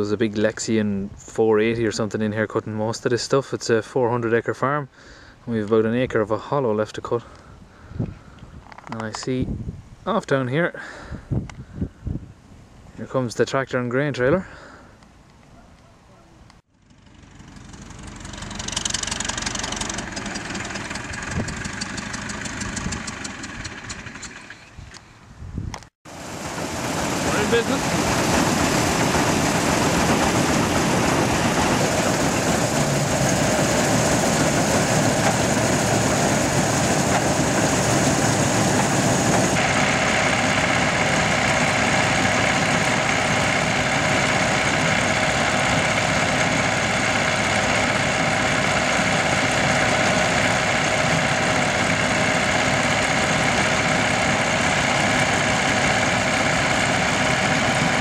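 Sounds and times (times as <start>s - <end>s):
combine harvester engine droning: 16.8s - 24.8s, 26.1s - 58.0s
steady machine whine: 26.1s - 58.0s.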